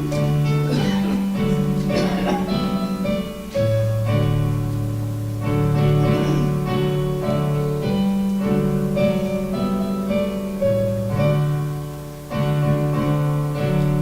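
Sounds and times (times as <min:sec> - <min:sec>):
keyboard playing held chords: 0:00.0 - 0:14.0.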